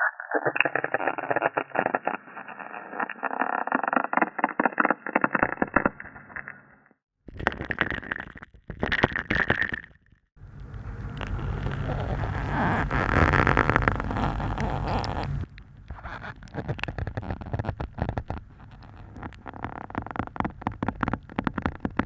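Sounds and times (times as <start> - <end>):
ice crackling underwater: 0.0 - 22.0
low underwater rumble: 10.4 - 21.9.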